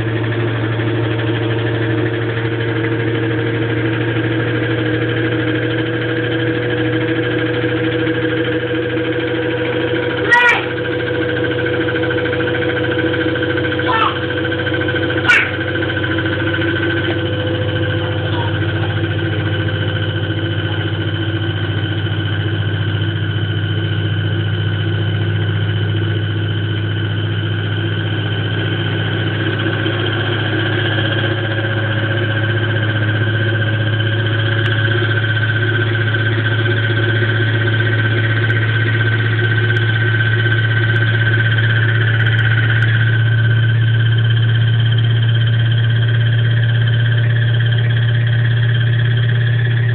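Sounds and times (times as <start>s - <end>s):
washing machine spinning: 0.0s - 49.9s
high-pitched whining: 15.0s - 21.2s.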